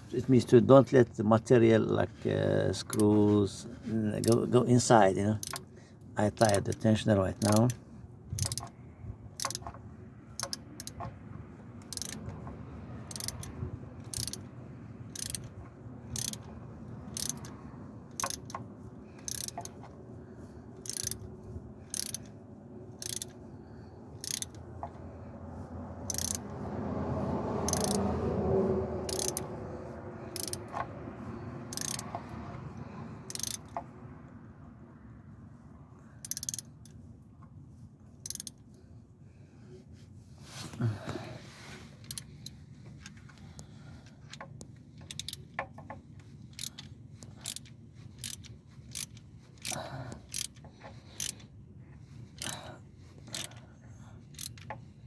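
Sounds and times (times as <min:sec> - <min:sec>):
ratchet wrench clicking: 0:02.8 - 0:03.1, 0:04.2 - 0:04.6, 0:05.3 - 0:05.7, 0:06.4 - 0:08.8, 0:09.4 - 0:09.8, 0:10.4 - 0:11.1, 0:11.8 - 0:14.5, 0:15.1 - 0:20.0, 0:20.8 - 0:23.5, 0:24.1 - 0:25.0, 0:26.0 - 0:26.6, 0:27.6 - 0:28.1, 0:29.0 - 0:29.6, 0:30.2 - 0:32.4, 0:33.2 - 0:33.9, 0:36.2 - 0:37.0, 0:38.2 - 0:38.7, 0:42.0 - 0:51.5, 0:52.3 - 0:53.6, 0:54.2 - 0:54.9.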